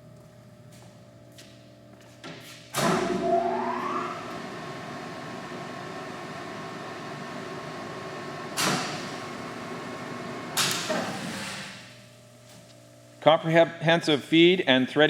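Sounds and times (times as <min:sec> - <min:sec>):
lathe humming: 0:03.2 - 0:10.6.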